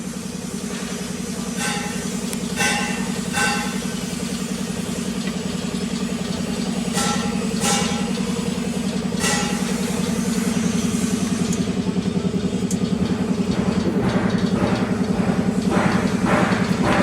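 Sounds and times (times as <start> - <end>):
grinder humming: 0.5 - 17.0.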